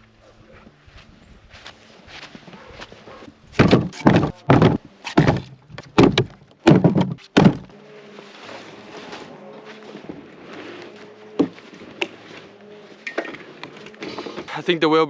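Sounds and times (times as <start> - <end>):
firewood thrown down: 3.6 - 7.7.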